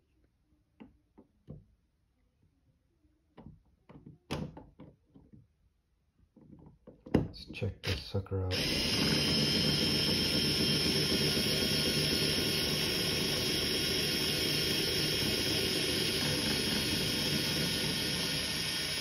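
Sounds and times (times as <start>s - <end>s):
electric screwdriver motor whine: 8.5s - 19.0s.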